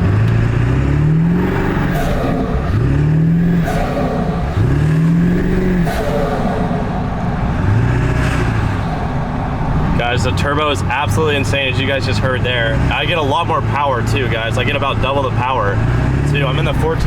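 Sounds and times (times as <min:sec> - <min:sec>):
diesel engine revving: 0:00.0 - 0:17.0
turbo whistling: 0:00.3 - 0:09.2.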